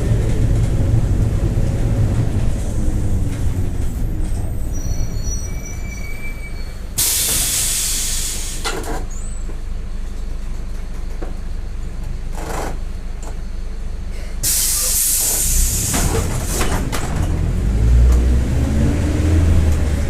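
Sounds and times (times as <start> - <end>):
bus engine rumbling: 0.0 - 20.0
brakes squealing: 0.1 - 9.6
compressed air hiss: 7.0 - 8.7, 14.4 - 15.9.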